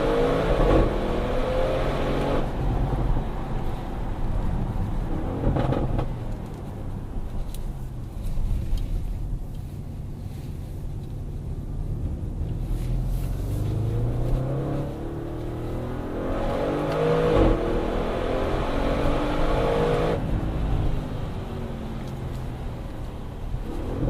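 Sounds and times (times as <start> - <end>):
car engine accelerating hard: 0.0 - 3.5, 12.0 - 24.0.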